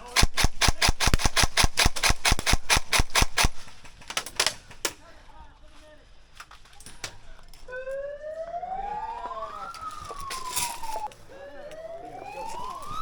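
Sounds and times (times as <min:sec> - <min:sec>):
siren wailing: 0:07.6 - 0:13.0.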